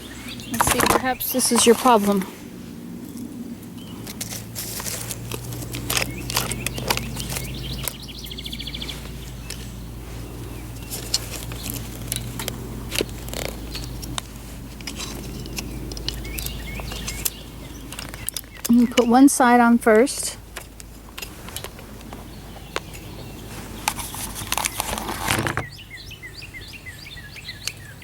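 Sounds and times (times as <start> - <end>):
bird trilling: 0.0 - 4.5, 5.4 - 14.2, 14.8 - 20.5, 21.6 - 28.0
steady low hum: 0.0 - 28.0
saw parts clicking and knocking: 0.4 - 2.2, 10.8 - 19.1.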